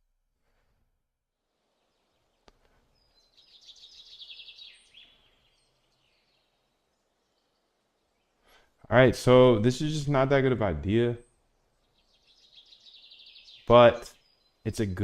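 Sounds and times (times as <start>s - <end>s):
faint click: 2.4s - 2.8s.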